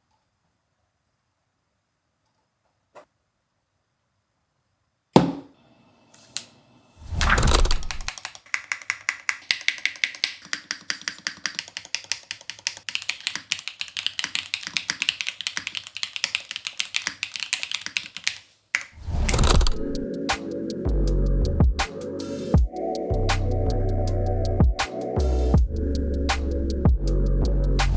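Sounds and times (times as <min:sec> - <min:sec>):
mechanical keyboard typing: 0:07.2 - 0:18.4, 0:19.3 - 0:20.0
electronic music: 0:19.4 - 0:27.9.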